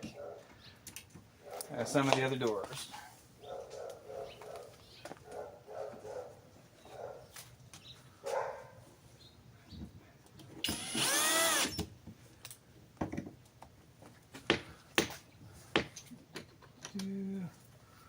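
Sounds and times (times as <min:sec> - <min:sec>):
power drill driving screw: 0:10.6 - 0:11.9.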